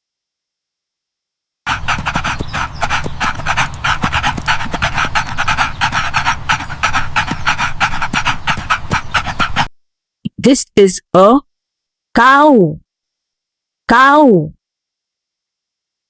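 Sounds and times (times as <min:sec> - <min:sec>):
dog panting rapidly: 0:01.7 - 0:09.7.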